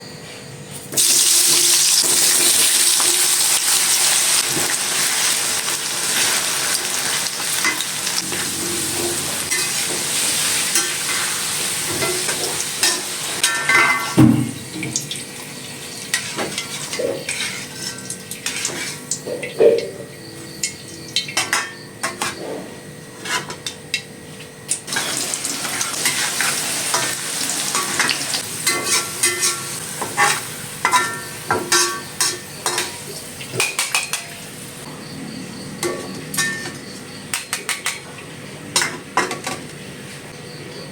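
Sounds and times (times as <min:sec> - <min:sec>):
food sizzling in oil: 0:00.9 - 0:19.3, 0:24.8 - 0:34.9
utensil scraping a pan: 0:16.1 - 0:19.1, 0:22.1 - 0:23.6, 0:25.9 - 0:32.9.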